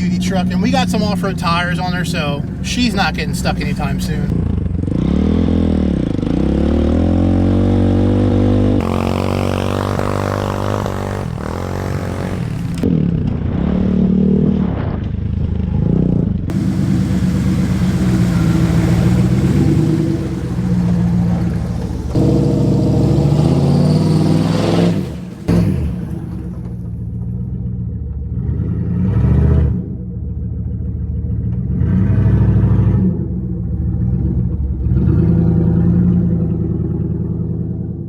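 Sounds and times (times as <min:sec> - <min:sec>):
pickup engine revving: 0:00.0 - 0:13.6, 0:16.5 - 0:27.3.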